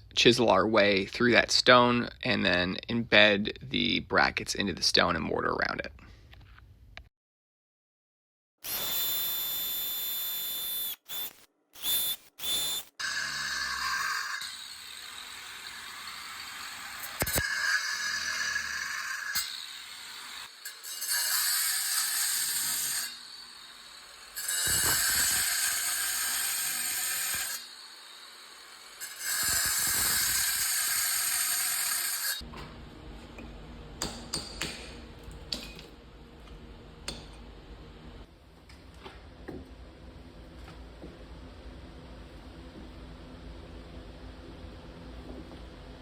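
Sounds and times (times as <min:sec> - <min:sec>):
power tool cutting stone: 0:08.7 - 0:32.4.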